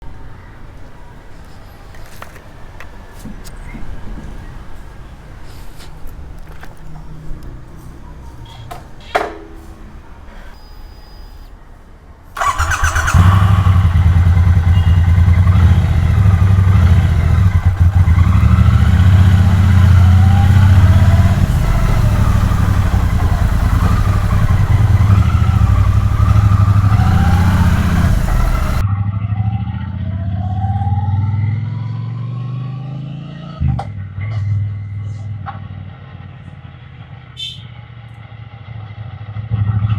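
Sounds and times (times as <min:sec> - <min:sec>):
motorcycle engine idling: 0:12.4 - 0:28.8.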